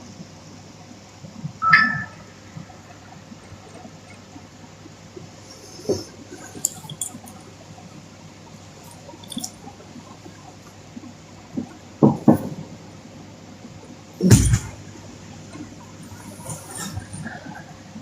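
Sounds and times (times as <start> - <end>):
quiet breathing: 5.2 - 10.8.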